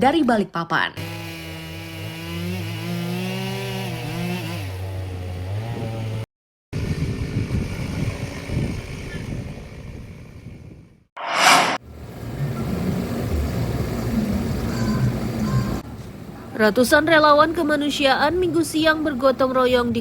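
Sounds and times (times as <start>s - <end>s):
loud whoosh: 11.2s - 11.8s
low rumble: 11.2s - 11.8s.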